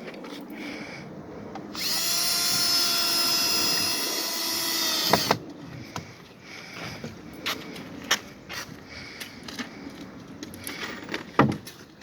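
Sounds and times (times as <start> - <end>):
power drill whining: 1.7 - 5.4.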